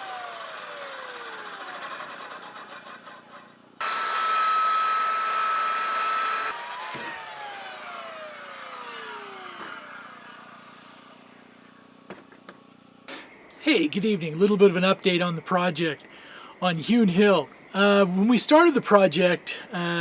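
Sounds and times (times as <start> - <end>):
electric chainsaw whining: 0.0 - 12.0.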